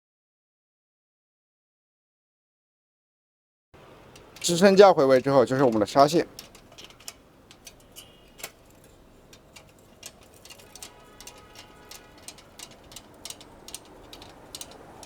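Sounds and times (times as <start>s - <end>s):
light metallic clicks and taps: 3.8s - 15.0s.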